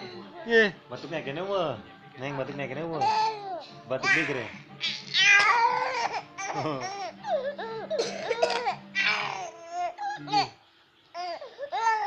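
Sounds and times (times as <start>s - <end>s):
baby babbling: 3.0s - 10.6s, 11.2s - 12.0s
baby laughing: 3.0s - 12.0s.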